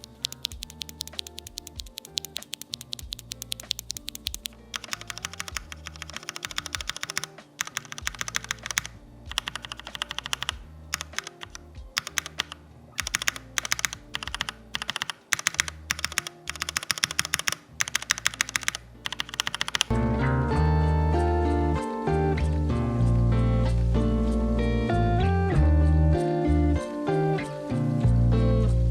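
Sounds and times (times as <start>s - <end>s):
mechanical keyboard typing: 0.0s - 19.9s.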